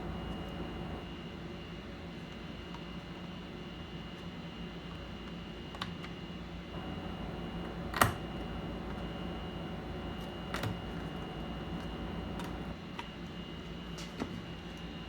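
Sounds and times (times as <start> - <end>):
steady hum: 0.0 - 1.1, 6.8 - 12.8.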